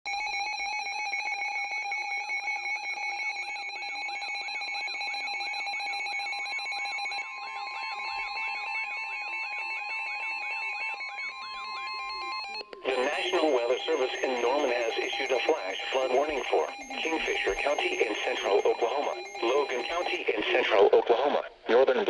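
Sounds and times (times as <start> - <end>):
fast-pulsing alarm tone: 0.1 - 20.7
steady single warning tone: 12.8 - 20.4.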